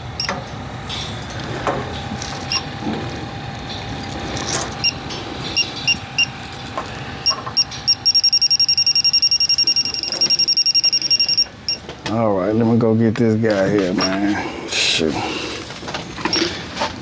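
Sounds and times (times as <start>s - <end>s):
leak detector high beeps: 4.8s - 5.0s, 7.2s - 11.8s.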